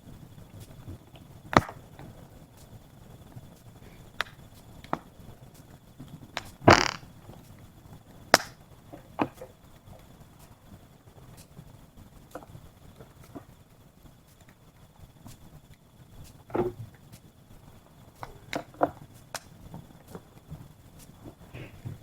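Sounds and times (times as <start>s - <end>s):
low hiss: 0.0s - 22.0s
wood fire crackling: 0.0s - 22.0s
sharp fire pops: 1.4s - 2.0s, 6.3s - 7.2s, 8.3s - 8.7s.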